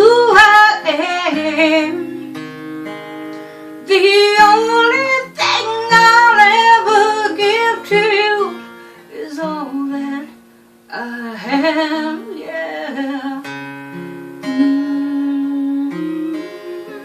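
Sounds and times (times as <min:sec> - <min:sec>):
woman singing slow love song: 0:00.0 - 0:02.6, 0:03.8 - 0:17.0
acoustic guitar: 0:00.0 - 0:17.0.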